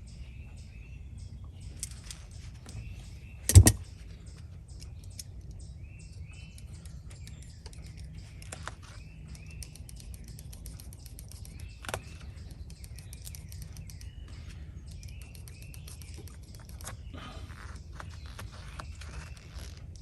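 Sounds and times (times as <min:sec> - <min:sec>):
birds chirping: 0:00.0 - 0:20.0
small clicks: 0:03.5 - 0:14.2.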